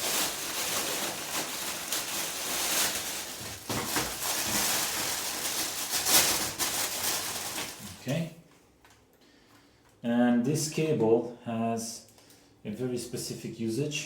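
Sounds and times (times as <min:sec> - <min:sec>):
packaging rustling and crinkling: 0:00.0 - 0:09.0.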